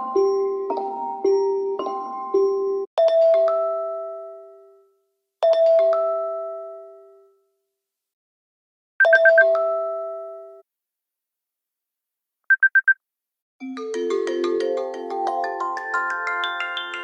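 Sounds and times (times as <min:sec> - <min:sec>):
short high beeps: 0:09.0 - 0:09.5, 0:12.5 - 0:13.0
ringtone melody: 0:09.0 - 0:10.6, 0:13.6 - 0:17.0
four-note phone chirp: 0:12.5 - 0:13.0.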